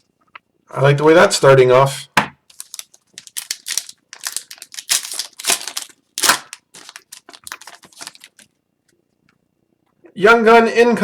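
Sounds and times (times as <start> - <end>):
card pack wrappers crinkling: 2.5 - 8.6.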